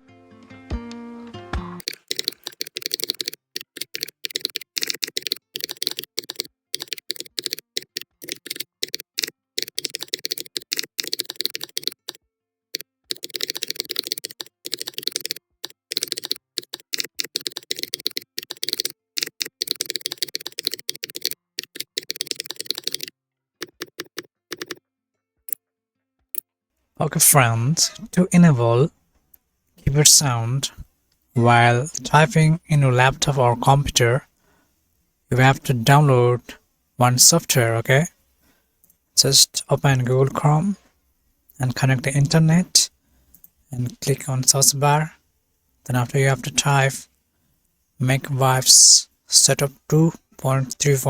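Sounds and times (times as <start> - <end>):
fast typing on keyboard: 1.8 - 12.2, 13.0 - 24.8.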